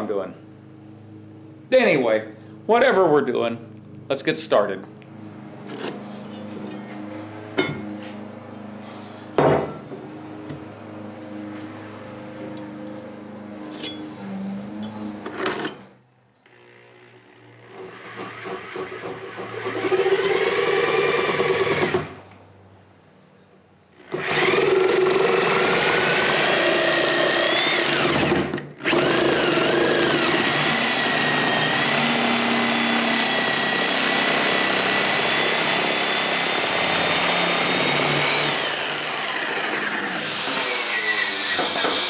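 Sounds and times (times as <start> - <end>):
reciprocating saw cutting wood: 17.5 - 22.2, 24.0 - 42.0.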